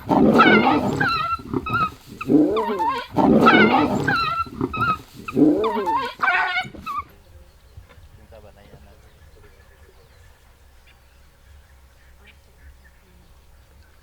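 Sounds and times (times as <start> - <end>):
dog yelping and screaming: 0.0 - 7.0
deep growling calls: 0.0 - 7.1.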